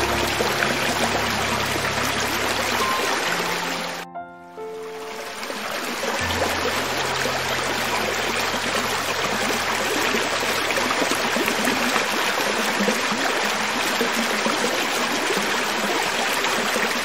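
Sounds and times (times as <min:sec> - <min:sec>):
water flowing over rocks: 0:00.0 - 0:17.0.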